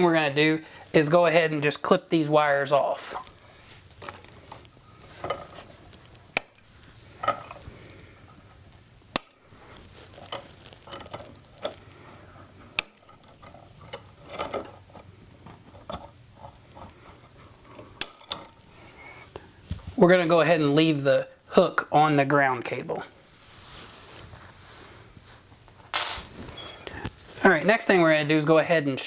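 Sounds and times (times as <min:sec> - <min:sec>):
wire rustling and clicks: 0:03.1 - 0:08.0
wire cutters snipping: 0:06.4 - 0:06.9, 0:09.1 - 0:09.8, 0:12.8 - 0:13.6.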